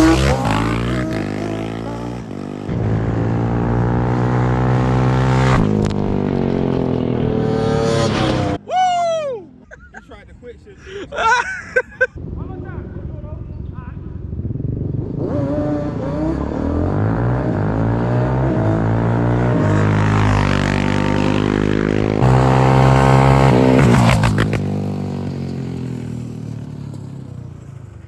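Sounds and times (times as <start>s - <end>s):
quad engines accelerating: 0.0s - 8.6s, 14.6s - 28.0s.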